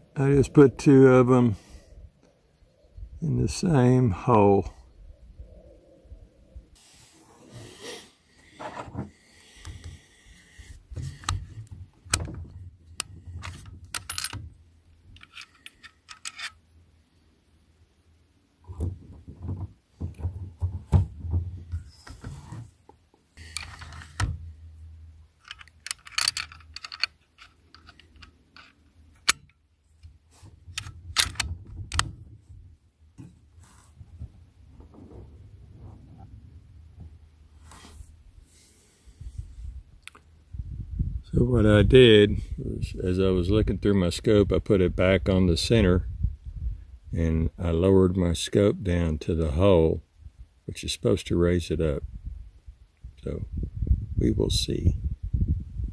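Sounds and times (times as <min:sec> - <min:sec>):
rifle and scope clicking and rattling: 0:10.9 - 0:16.7, 0:23.4 - 0:24.5, 0:25.4 - 0:32.3.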